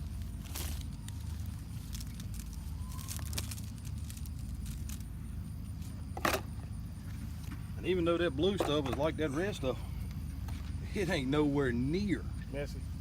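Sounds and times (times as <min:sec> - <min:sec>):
low mechanical rumble: 0:00.0 - 0:13.0.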